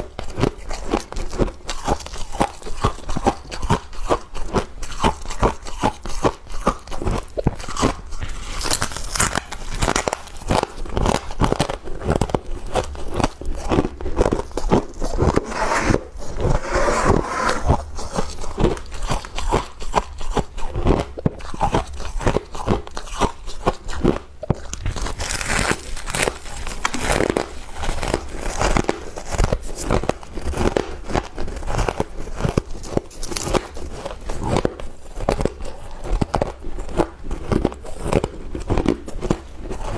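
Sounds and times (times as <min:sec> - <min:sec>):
frost being chewed crunching: 0:00.6 - 0:15.3, 0:18.3 - 0:29.4.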